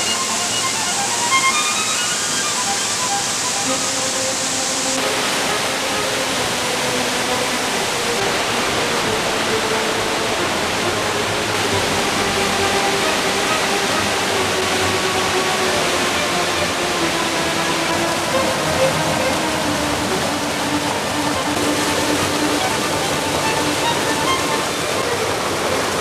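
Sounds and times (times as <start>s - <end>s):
soft instrumental music: 0.0s - 26.0s
water rushing in a rocky stream: 0.0s - 26.0s.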